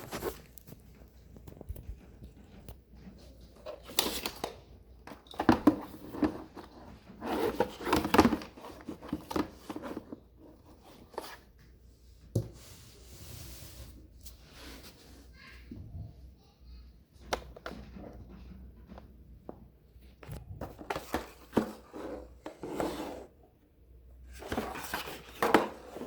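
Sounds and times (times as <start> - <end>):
packaging rustling and scraping: 0.0 - 11.6, 24.2 - 26.0.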